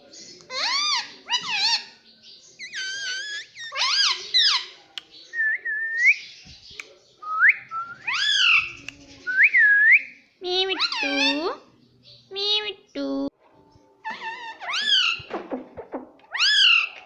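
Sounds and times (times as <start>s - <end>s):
parrot whistles and harsh calls: 2.6s - 4.7s, 8.0s - 10.2s, 14.1s - 15.3s, 16.3s - 17.0s.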